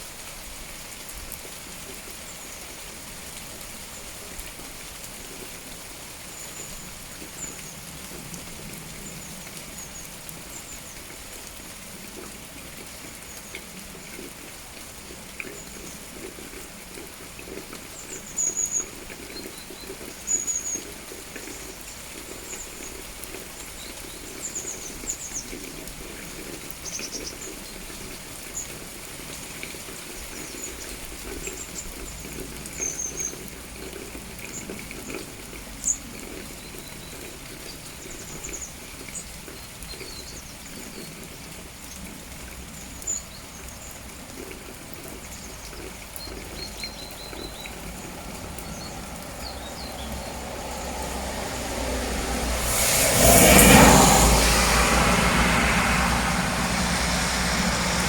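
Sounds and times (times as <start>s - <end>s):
steady rain falling: 0.0s - 58.0s
small birds chirping: 45.3s - 51.1s.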